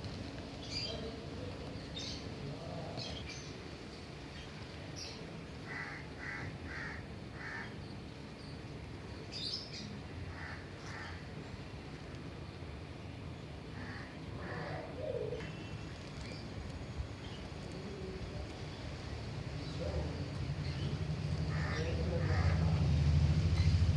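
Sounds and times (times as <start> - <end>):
low background rumble: 16.3 - 23.9.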